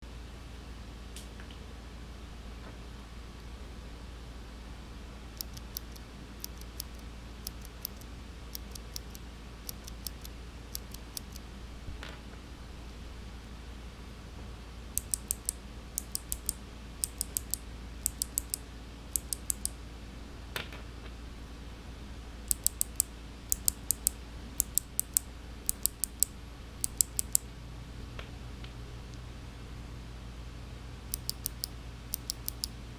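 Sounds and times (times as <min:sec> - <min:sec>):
mechanical keyboard clicks: 0:05.4 - 0:11.4, 0:15.0 - 0:18.6, 0:19.2 - 0:19.8, 0:22.5 - 0:27.4, 0:31.1 - 0:32.7.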